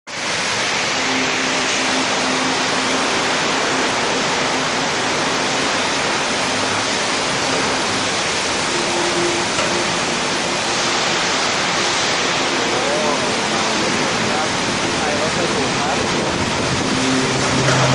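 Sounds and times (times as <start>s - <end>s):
heavy rain: 0.1s - 17.9s.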